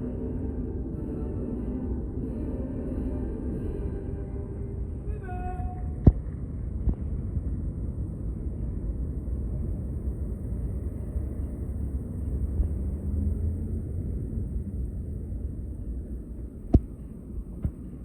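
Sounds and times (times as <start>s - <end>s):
ceremony music: 0.0s - 5.8s
low outdoor rumble: 0.0s - 18.0s.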